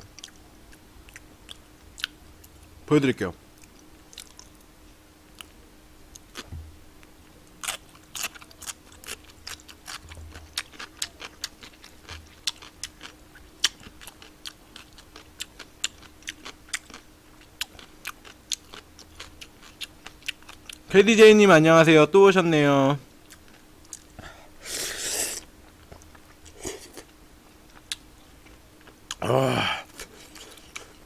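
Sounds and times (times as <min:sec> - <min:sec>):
faint steady hum: 0:00.0 - 0:31.0
pickled radish crunching: 0:05.3 - 0:20.9, 0:23.1 - 0:31.0.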